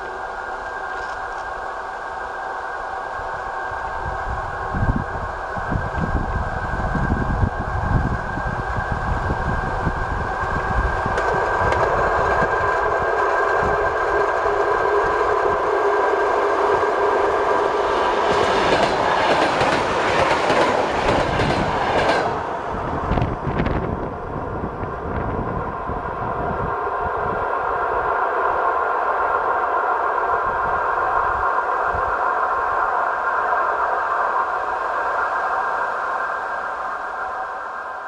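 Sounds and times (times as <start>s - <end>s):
train running hum: 0.0s - 38.0s
train wheels clicking over rail joints: 11.0s - 15.8s, 16.7s - 22.5s.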